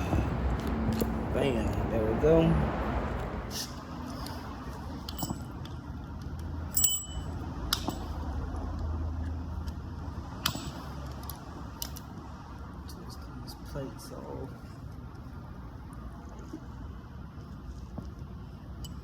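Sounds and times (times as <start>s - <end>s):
steady low hum: 0.0s - 19.0s
metal tools clinking: 5.1s - 5.5s
metallic ring: 5.1s - 5.6s, 6.7s - 8.0s, 10.4s - 10.9s, 18.8s - 19.0s.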